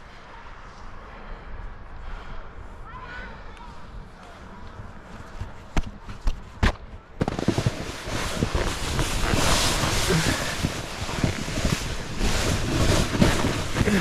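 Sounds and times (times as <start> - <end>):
snowboard rushing over snow: 7.2 - 14.0.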